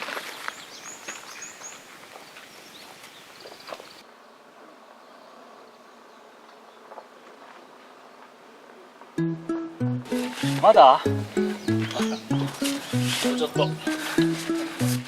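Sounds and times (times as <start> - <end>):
high falling chirps: 9.2 - 15.0
insects buzzing: 10.1 - 15.0.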